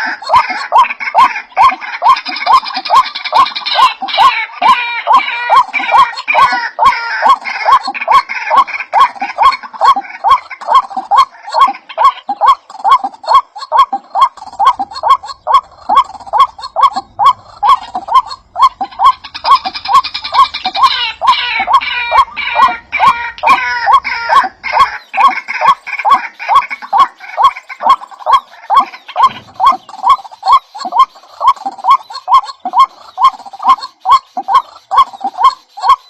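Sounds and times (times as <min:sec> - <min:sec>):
higher bird twittering: 0:00.0 - 0:36.0
bird call with sharp click: 0:28.3 - 0:36.0.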